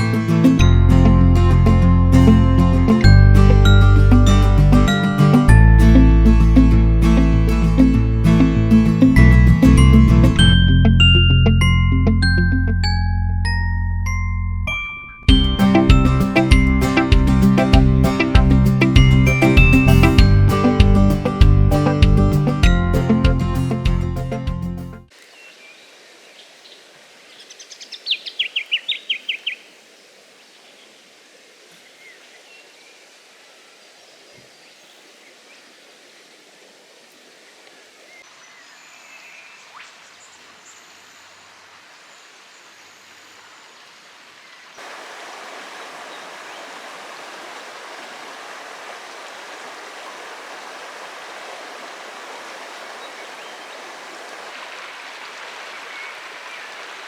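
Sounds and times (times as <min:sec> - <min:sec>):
flowing river water: 0:00.0 - 0:10.6, 0:15.3 - 0:23.2, 0:25.0 - 0:57.0
bird trilling: 0:27.5 - 0:29.7, 0:52.5 - 0:56.9.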